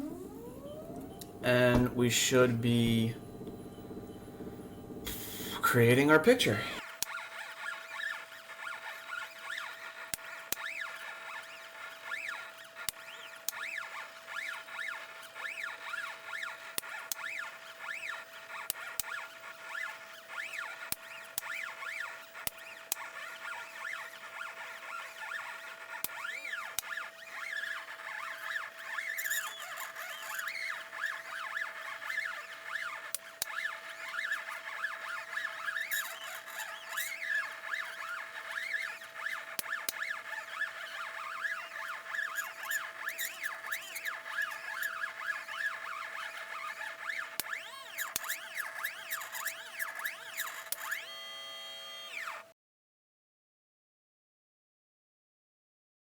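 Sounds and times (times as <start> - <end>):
steady hum: 0.0 - 6.8
stepper motors whining: 0.0 - 52.5.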